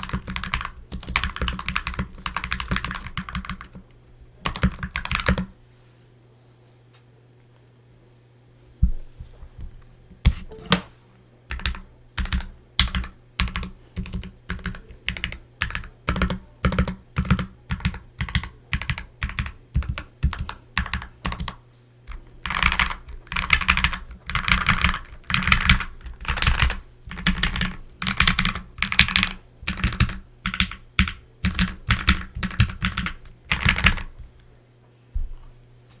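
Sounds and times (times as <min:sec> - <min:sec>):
mechanical keyboard typing: 0:00.0 - 0:03.8, 0:04.4 - 0:05.5, 0:11.5 - 0:34.1.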